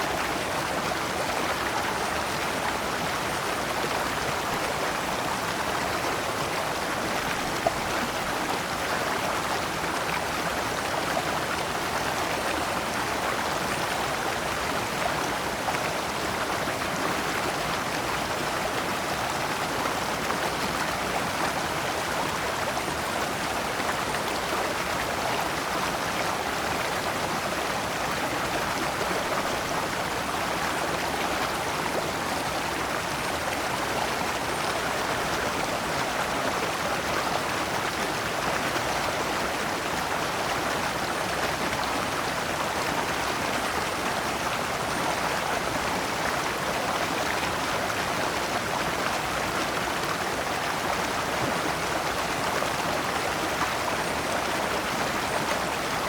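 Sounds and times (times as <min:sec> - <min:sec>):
stream flowing over rocks: 0:00.0 - 0:56.0.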